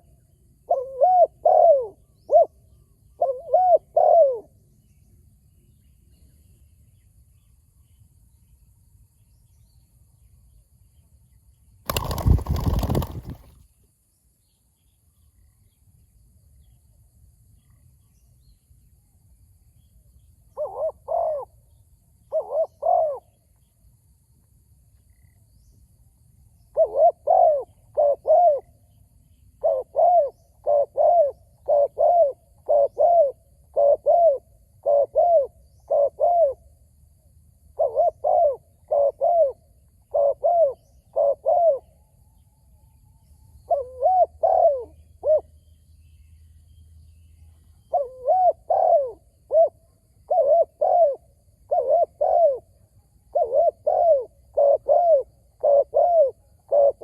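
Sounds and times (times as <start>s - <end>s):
doves cooing: 3.2s - 4.5s, 11.9s - 13.5s, 37.8s - 41.8s, 43.7s - 45.4s, 47.9s - 49.7s, 50.3s - 52.6s, 53.3s - 57.0s.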